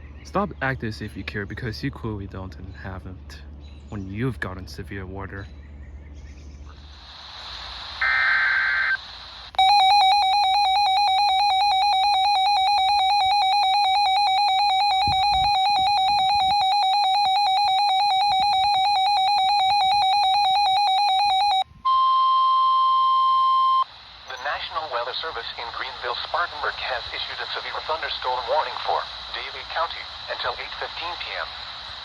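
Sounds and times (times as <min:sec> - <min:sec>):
digital data screech: 0:08.0 - 0:09.0, 0:09.6 - 0:21.6
warbling electronic alarm: 0:08.0 - 0:24.6
steady warning alarm tone: 0:09.5 - 0:24.6.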